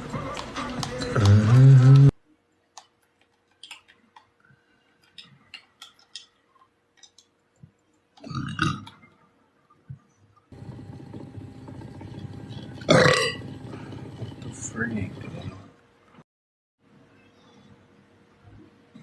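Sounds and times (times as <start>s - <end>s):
faint clicks and mouth noises: 0.1s - 10.5s
man burping: 8.2s - 8.9s, 12.9s - 13.4s.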